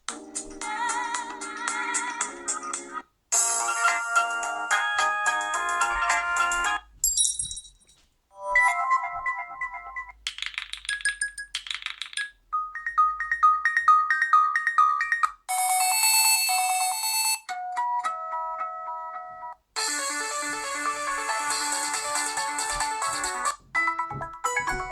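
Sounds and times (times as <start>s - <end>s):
phone ringtone melodies and chimes: 8.4s - 24.8s.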